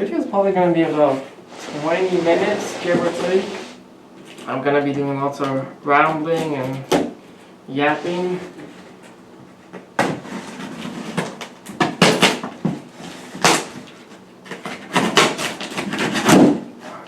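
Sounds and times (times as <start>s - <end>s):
objects knocking and scraping: 1.5s - 3.8s.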